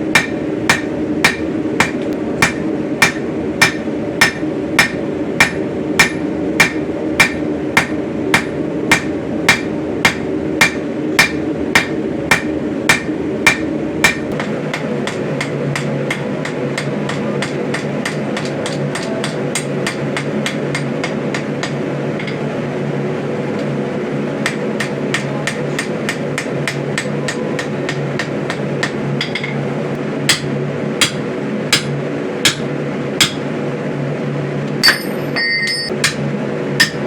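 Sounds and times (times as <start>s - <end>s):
hammer striking steel on anvil: 0.0s - 22.4s, 24.4s - 29.6s, 30.3s - 33.4s, 34.8s - 36.2s, 36.8s - 37.0s.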